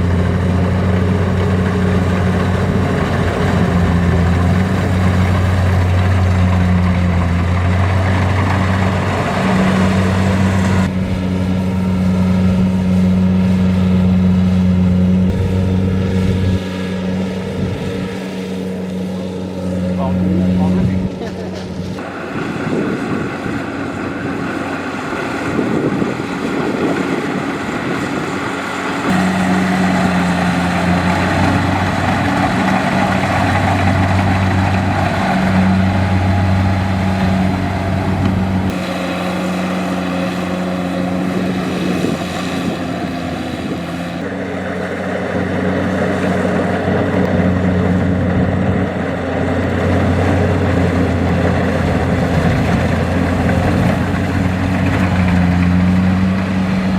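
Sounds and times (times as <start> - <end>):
combine harvester running: 0.0 - 56.9.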